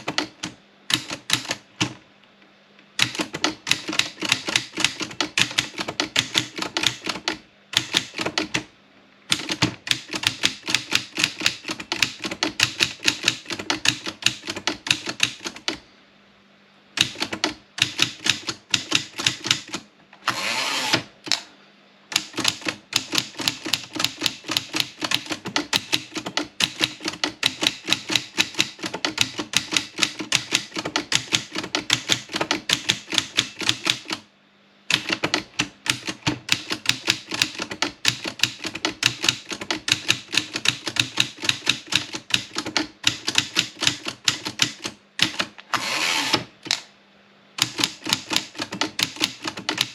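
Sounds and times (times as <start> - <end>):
typewriter keys striking: 0.0 - 2.0, 3.0 - 8.7, 9.3 - 15.8, 17.0 - 19.9, 22.1 - 34.2, 34.9 - 45.6, 47.6 - 49.9
typewriter carriage scraping back: 18.4 - 21.1, 44.2 - 46.6.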